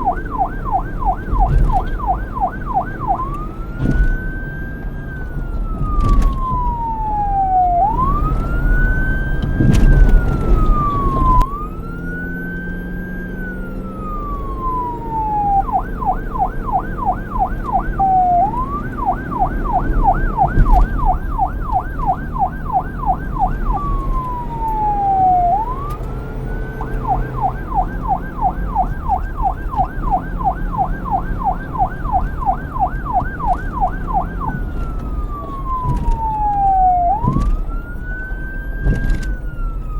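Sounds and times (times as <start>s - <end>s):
police car siren wailing and yelping: 0.0s - 39.9s.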